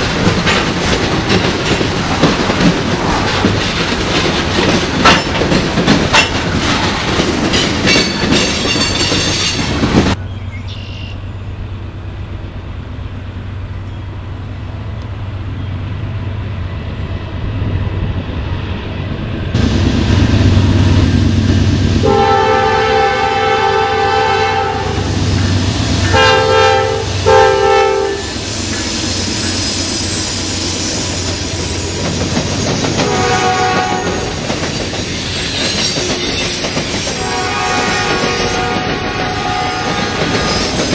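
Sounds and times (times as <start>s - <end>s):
train wheels clattering: 0.0s - 10.2s, 25.0s - 40.9s
diesel locomotive rumble: 0.0s - 40.9s
locomotive air horn blasts: 22.0s - 25.2s, 26.0s - 28.4s, 33.0s - 34.4s, 37.2s - 40.7s.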